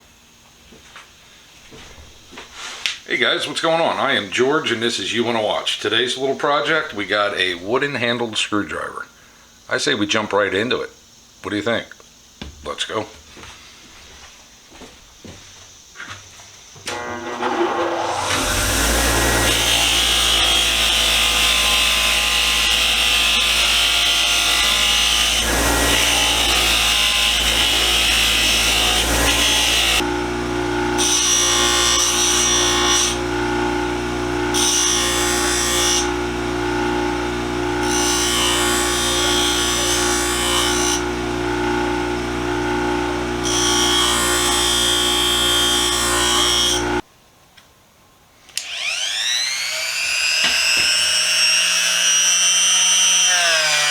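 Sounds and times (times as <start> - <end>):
power tool motor hum: 16.8 - 47.0, 48.6 - 53.9.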